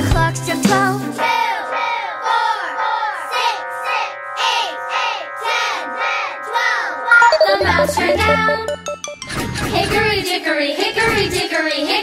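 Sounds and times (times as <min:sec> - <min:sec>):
cartoon clock chime striking: 0:07.2 - 0:09.6
held musical chord: 0:07.2 - 0:09.6.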